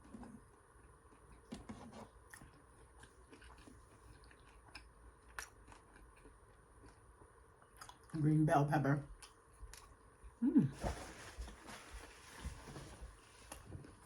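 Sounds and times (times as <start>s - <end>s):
person chewing food: 0.0s - 8.2s, 9.1s - 10.4s.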